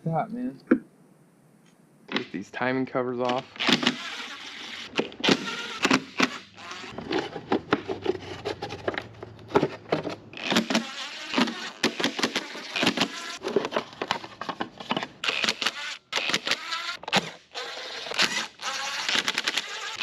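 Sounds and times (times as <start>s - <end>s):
small power tool whirring: 3.4s - 7.0s, 15.2s - 20.0s.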